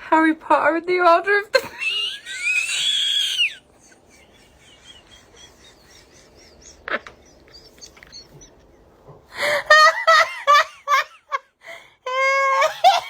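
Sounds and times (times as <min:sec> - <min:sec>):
person wheezing laugh: 0:01.7 - 0:07.5.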